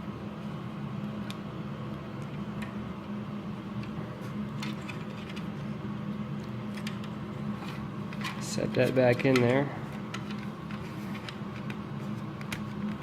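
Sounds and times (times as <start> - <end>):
low background hum: 0.0 - 13.0.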